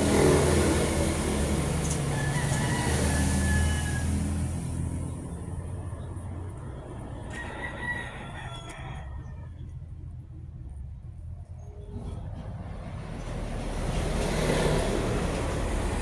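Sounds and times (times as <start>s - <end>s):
rooster crowing: 1.4s - 4.9s, 7.2s - 9.6s.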